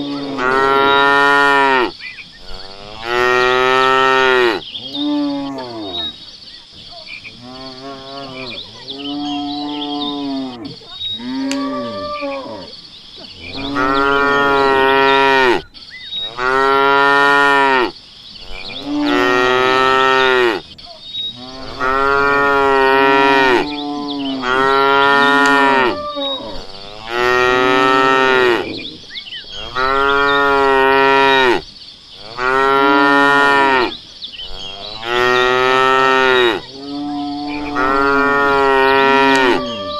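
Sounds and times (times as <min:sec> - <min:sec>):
cattle mooing: 0:00.0 - 0:01.9, 0:02.5 - 0:06.1, 0:07.4 - 0:12.7, 0:13.4 - 0:15.6, 0:18.5 - 0:20.6, 0:21.4 - 0:29.0, 0:34.6 - 0:39.9.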